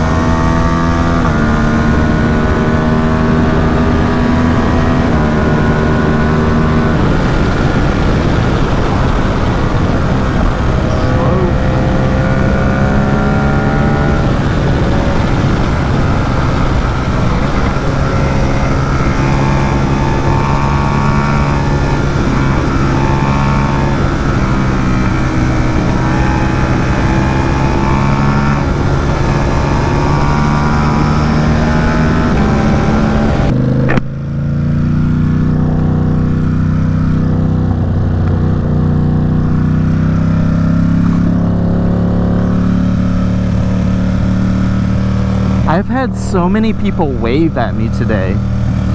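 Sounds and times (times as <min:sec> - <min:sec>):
motorcycle engine revving: 0:00.0 - 0:47.1, 0:48.0 - 0:48.9
wind rush: 0:06.6 - 0:18.4.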